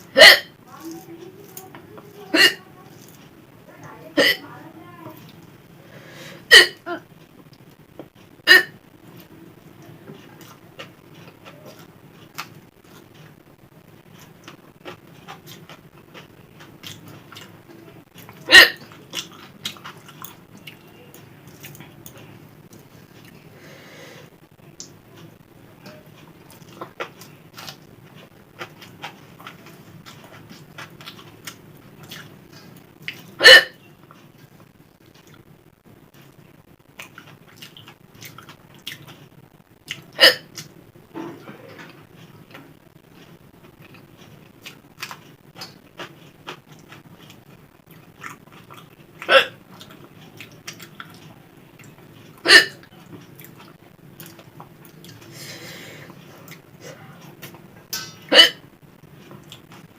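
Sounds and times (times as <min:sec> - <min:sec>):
person hiccupping: 0:00.1 - 0:00.6, 0:02.3 - 0:02.7, 0:04.2 - 0:04.5, 0:06.5 - 0:07.1, 0:08.4 - 0:08.8, 0:18.4 - 0:18.9, 0:33.4 - 0:33.9, 0:39.9 - 0:40.6, 0:49.2 - 0:49.6, 0:52.4 - 0:52.9, 0:58.0 - 0:58.7
chewing clicks and mouth noises: 0:14.0 - 0:23.4, 0:24.8 - 0:33.3, 0:36.1 - 0:40.7, 0:41.7 - 0:55.3, 0:56.1 - 0:58.0, 0:59.1 - 0:59.9.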